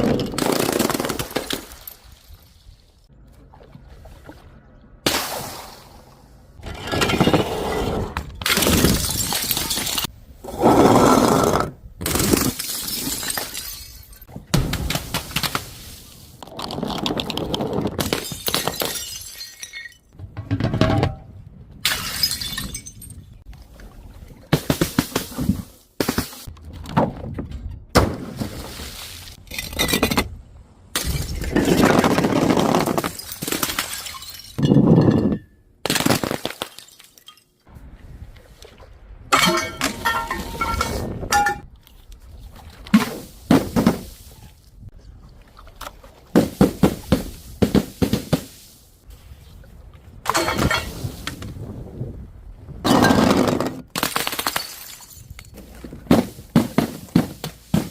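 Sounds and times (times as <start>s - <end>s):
glass bottles shattering: 8.4s - 10.1s, 12.2s - 14.3s, 18.0s - 20.2s, 21.8s - 23.2s, 33.0s - 37.6s, 39.3s - 41.6s, 50.3s - 51.0s, 54.0s - 55.6s.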